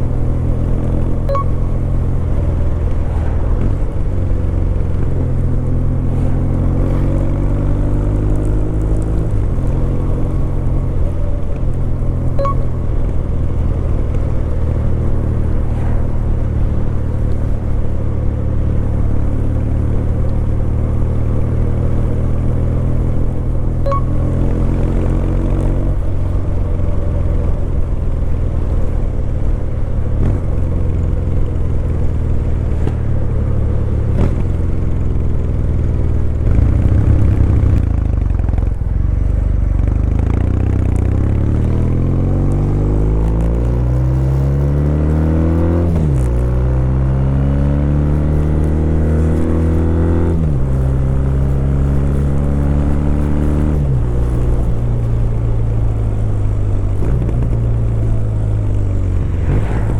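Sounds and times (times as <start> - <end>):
motorcycle engine revving through gears: 0.0 - 59.9.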